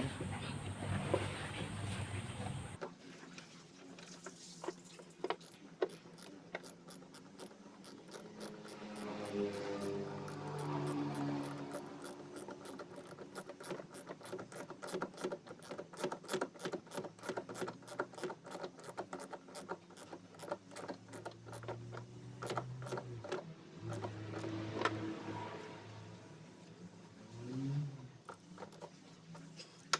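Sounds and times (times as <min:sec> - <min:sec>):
ratchet clicking rapidly: 0:05.3 - 0:25.0.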